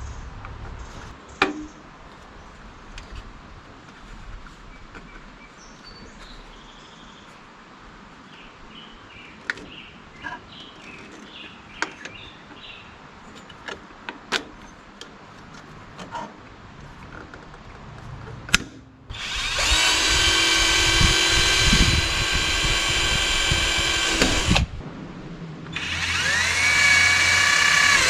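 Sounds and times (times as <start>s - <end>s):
steady background noise: 0.0s - 28.0s
small birds chirping: 4.6s - 7.5s, 8.2s - 13.5s.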